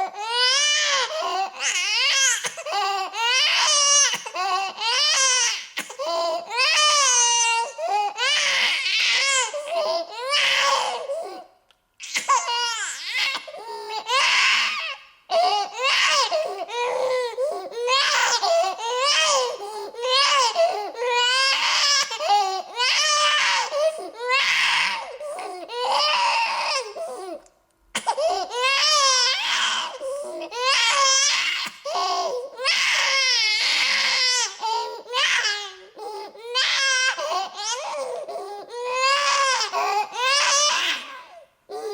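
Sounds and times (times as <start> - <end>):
infant crying: 0.0 - 41.9.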